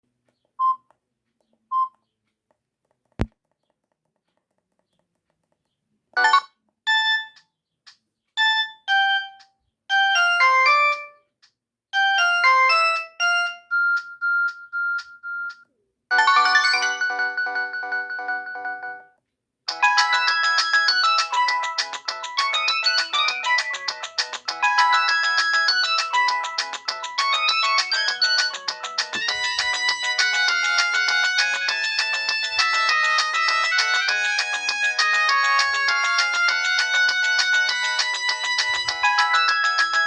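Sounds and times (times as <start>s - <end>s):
short phone beeps: 0.6s - 0.8s, 1.7s - 2.0s
synthesized ringtone melody: 6.2s - 7.4s, 8.4s - 11.2s, 12.0s - 19.1s, 19.7s - 40.0s.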